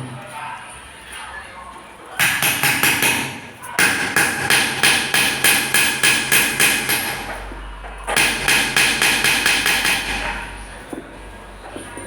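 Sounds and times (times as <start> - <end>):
hammer strikes on metal: 2.2 - 7.5, 8.1 - 10.5.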